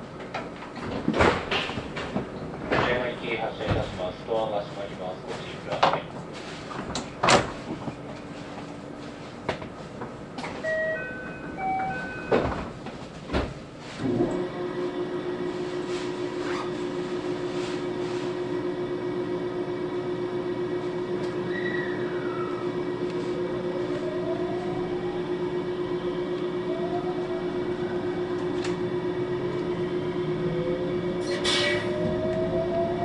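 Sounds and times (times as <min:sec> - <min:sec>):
train electric hum: 0:00.0 - 0:33.0
electronic chime: 0:10.6 - 0:12.4
train doors knocking shut: 0:10.7 - 0:13.6
traction motor whine: 0:14.0 - 0:33.0.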